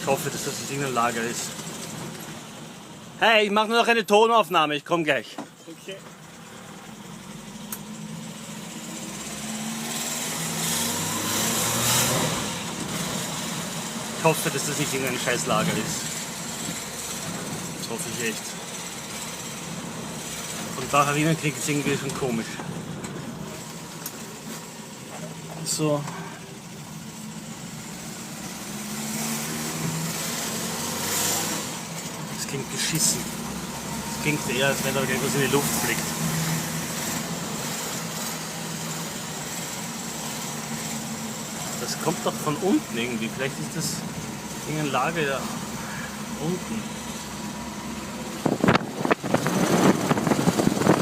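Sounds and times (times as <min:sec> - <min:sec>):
car engine running: 0:00.0 - 0:51.0
odd engine noise: 0:00.0 - 0:51.0
road and wind noise: 0:00.0 - 0:51.0.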